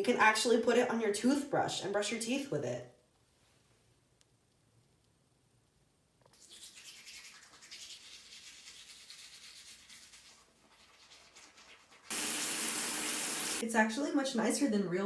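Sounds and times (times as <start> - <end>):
toothbrush scrubbing teeth: 6.3 - 13.6
water tap running: 12.1 - 13.6.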